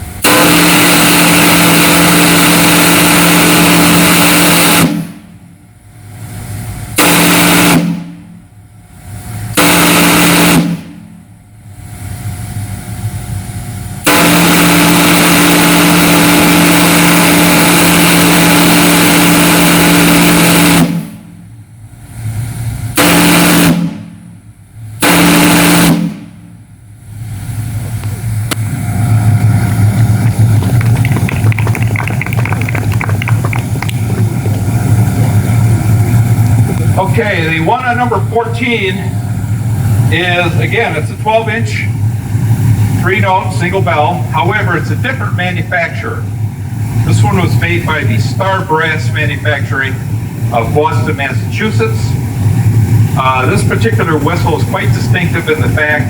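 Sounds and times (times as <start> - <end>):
steam whistle blasts: 0.0 - 5.4, 6.9 - 11.3, 14.0 - 21.5, 22.9 - 24.4, 25.0 - 26.6.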